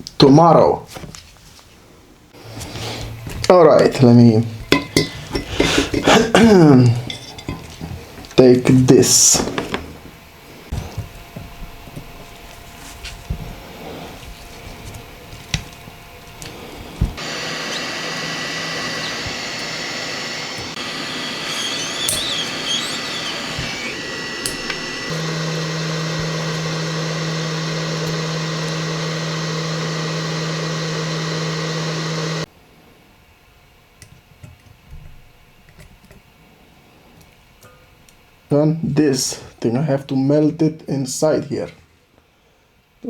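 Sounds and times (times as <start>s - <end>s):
electric tool whirring: 13.6s - 32.5s.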